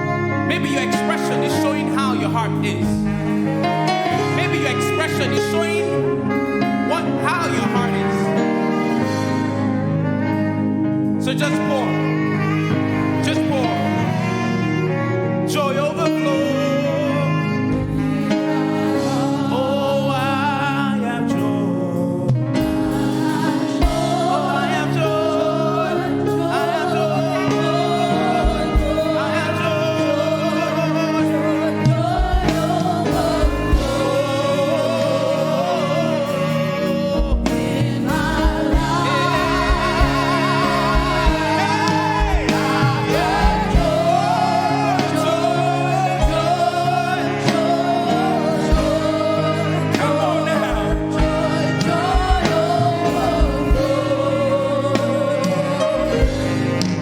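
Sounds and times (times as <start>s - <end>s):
voices singing gospel music: 0.0s - 57.0s
low drum beat: 37.2s - 44.5s, 46.2s - 46.7s, 48.5s - 49.3s, 50.0s - 55.2s.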